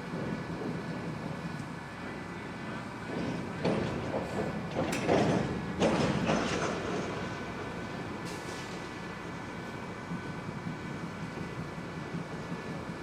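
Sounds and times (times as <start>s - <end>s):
workshop machinery humming: 0.0s - 13.0s
loud clattering knocks: 3.1s - 7.4s.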